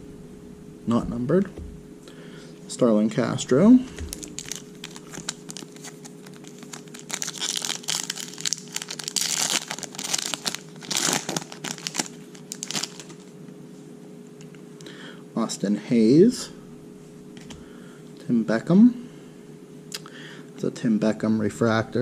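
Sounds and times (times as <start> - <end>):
faint steady hum: 0.0 - 22.0
foil wrapper crinkling and tearing: 4.0 - 13.3.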